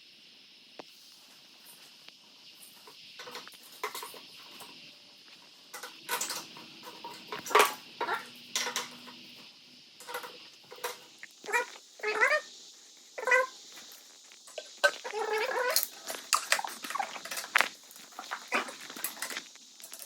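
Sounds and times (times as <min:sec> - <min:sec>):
faint steady hiss: 0:00.0 - 0:20.0
metal parts and tools clinking: 0:05.7 - 0:09.4, 0:10.0 - 0:11.7, 0:14.5 - 0:20.0.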